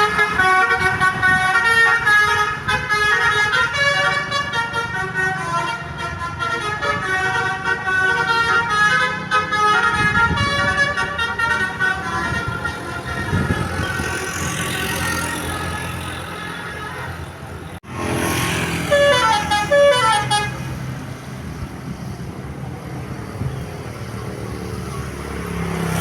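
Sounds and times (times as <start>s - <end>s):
multi-tone bus horn tune: 0.0s - 21.0s
low vehicle rumble: 9.9s - 16.4s.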